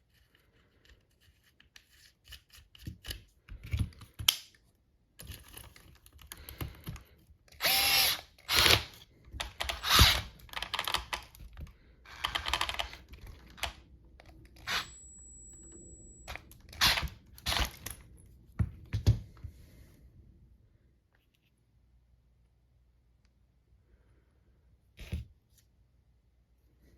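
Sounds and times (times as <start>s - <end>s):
thin high whine: 14.6s - 16.4s.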